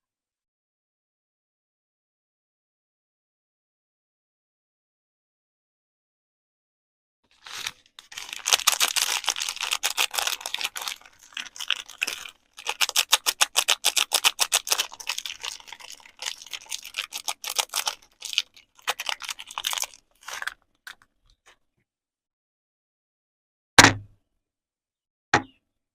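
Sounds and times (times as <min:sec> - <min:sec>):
packaging crinkling and tapping: 0:07.4 - 0:21.6.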